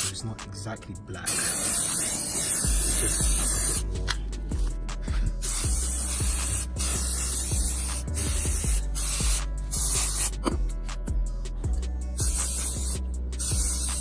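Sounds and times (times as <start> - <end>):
aerosol can spraying: 1.2 - 4.7, 5.4 - 10.5, 12.2 - 14.0.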